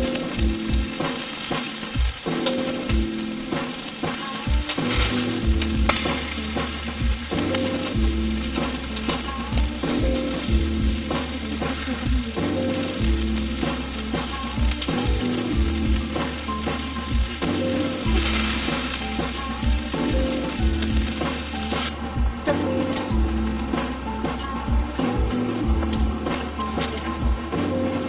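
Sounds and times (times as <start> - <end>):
food sizzling in a pan: 0.0 - 21.9
background music with bass beat: 0.0 - 28.0.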